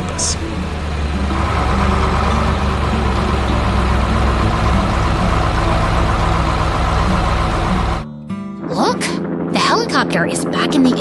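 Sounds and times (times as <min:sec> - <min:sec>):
heavy truck engine running: 0:00.0 - 0:08.0.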